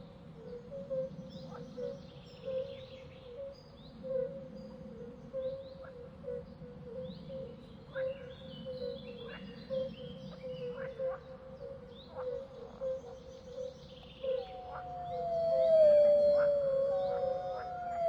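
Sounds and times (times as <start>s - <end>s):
birds chirping: 14.3s - 18.0s
constant pulsing tone: 14.3s - 18.0s.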